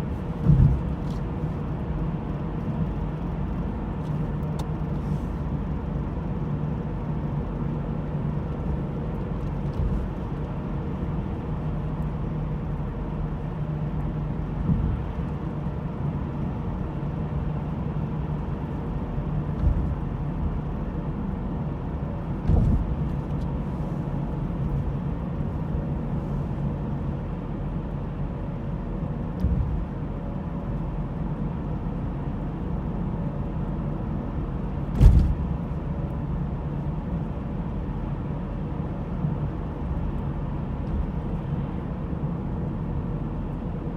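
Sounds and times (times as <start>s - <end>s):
car engine and road noise: 0.0s - 43.9s
short thumps from the road: 0.3s - 1.3s, 14.6s - 15.2s, 19.5s - 20.0s, 22.4s - 23.4s, 29.3s - 29.8s, 34.9s - 35.6s.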